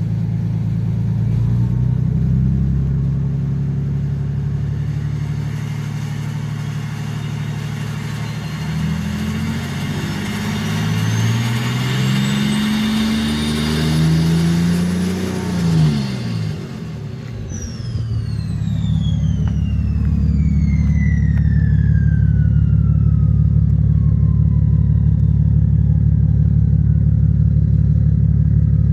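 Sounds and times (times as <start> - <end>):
diesel engine revving: 0.0 - 28.9
turbo whistle: 6.9 - 13.1, 17.4 - 25.4.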